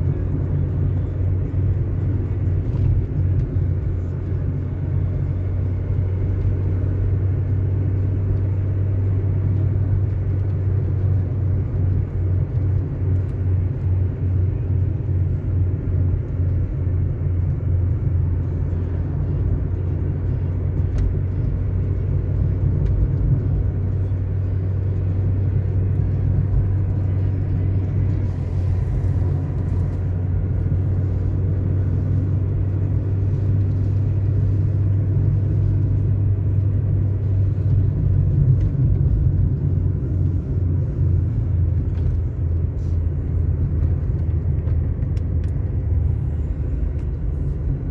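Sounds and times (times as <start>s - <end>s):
car engine and tyre road noise: 0.0s - 47.9s.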